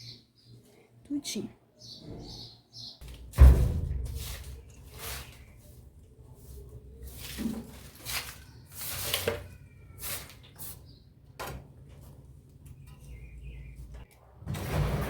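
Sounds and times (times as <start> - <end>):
knocks and scrapes of objects: 3.0 - 10.5.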